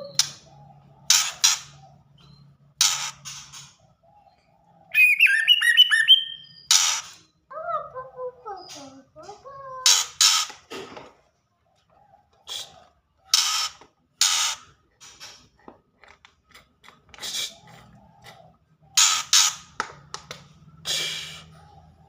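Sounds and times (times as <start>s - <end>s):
bird giving harsh rasping calls: 0.0s - 2.0s, 2.8s - 3.8s, 4.9s - 7.3s, 9.8s - 10.6s, 12.4s - 14.8s, 17.2s - 19.8s.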